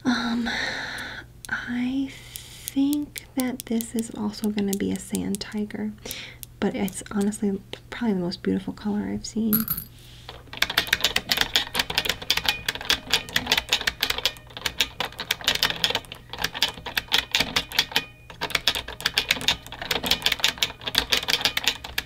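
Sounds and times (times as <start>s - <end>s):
typing on mechanical keyboard: 10.5s - 22.0s.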